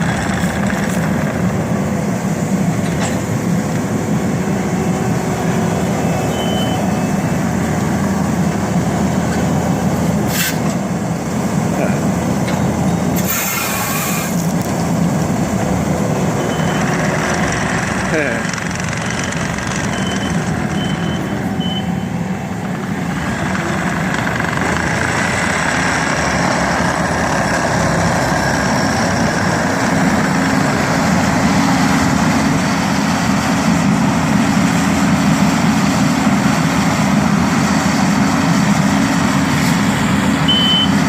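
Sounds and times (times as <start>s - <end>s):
diesel engine running: 0.0s - 41.0s
backup alarm beeping: 6.0s - 7.1s, 16.4s - 16.9s, 19.8s - 22.2s, 40.5s - 41.0s.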